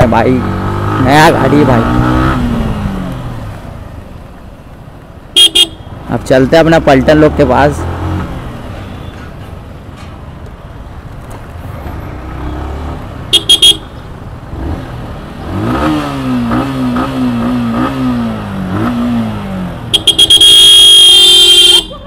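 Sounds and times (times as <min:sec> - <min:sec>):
motorcycle engine revving: 0:00.0 - 0:03.6, 0:14.4 - 0:20.4
road and wind noise: 0:00.0 - 0:22.0
horn tooting: 0:05.4 - 0:05.9, 0:13.3 - 0:13.9, 0:19.9 - 0:22.0.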